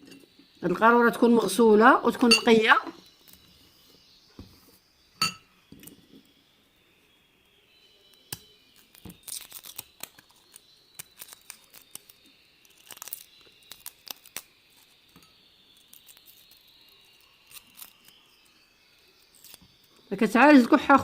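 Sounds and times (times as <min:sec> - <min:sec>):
garlic skins crackling: 0:08.2 - 0:15.2, 0:15.8 - 0:21.0.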